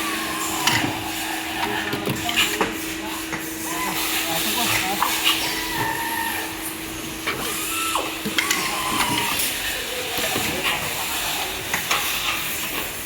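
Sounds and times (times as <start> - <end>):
low machine hum: 0.0 - 11.1.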